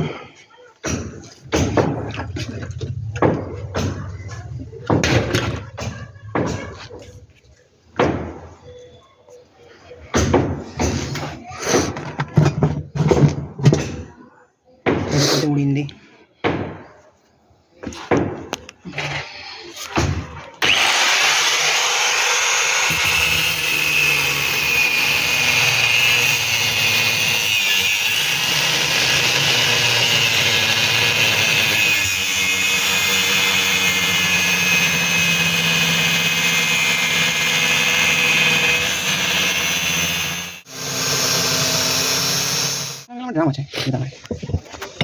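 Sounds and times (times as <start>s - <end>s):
angle grinder cutting metal: 20.6s - 43.1s.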